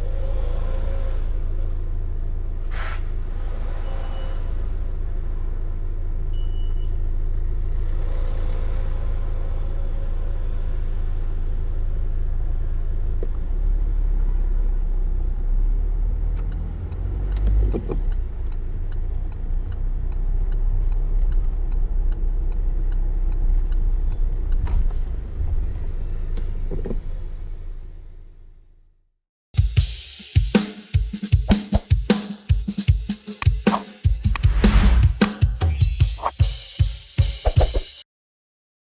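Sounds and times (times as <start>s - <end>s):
car engine and road rumble: 0.0s - 29.1s.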